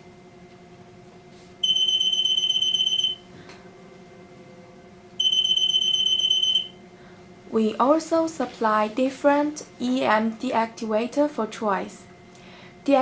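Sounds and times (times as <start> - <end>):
security gate alarm tone: 1.6 - 3.3, 5.2 - 6.8.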